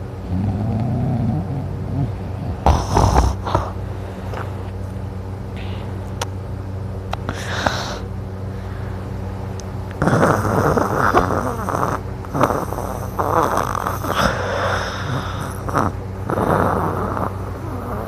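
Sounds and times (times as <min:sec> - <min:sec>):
steady low hum: 0:00.0 - 0:18.0
person snoring loudly: 0:00.3 - 0:03.8, 0:10.0 - 0:18.0.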